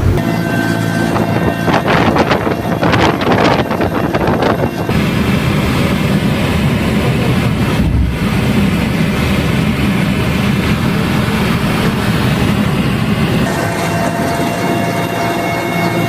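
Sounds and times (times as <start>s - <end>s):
low engine rumble: 0.0s - 16.0s.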